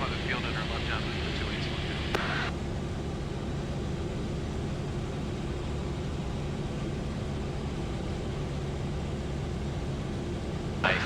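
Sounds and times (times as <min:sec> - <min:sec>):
propeller plane engine droning: 0:00.0 - 0:11.0.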